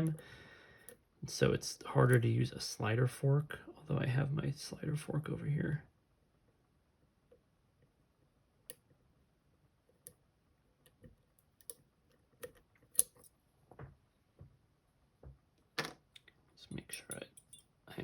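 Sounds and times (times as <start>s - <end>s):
lock pick metallic clicks: 12.4s - 13.3s, 16.1s - 17.7s.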